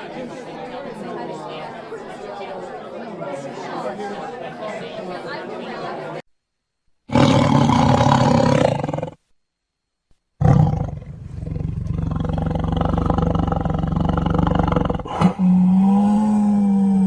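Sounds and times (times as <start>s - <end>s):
loud animal calls: 10.4s - 17.0s.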